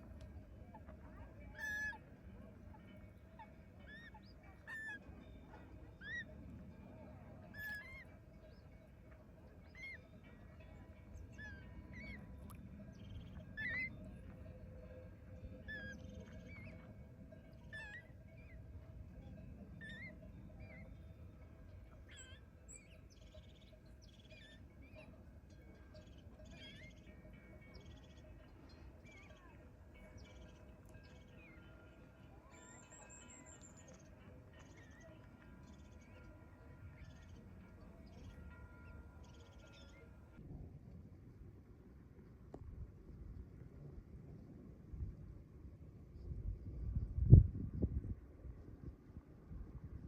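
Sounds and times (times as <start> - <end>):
birds whistling and trilling: 11.2 - 14.1, 15.6 - 16.9
bird calling: 13.4 - 14.0.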